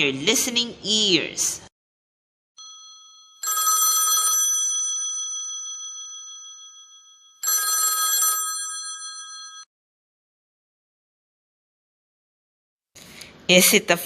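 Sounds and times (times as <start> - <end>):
telephone bell ringing: 2.6 - 9.7.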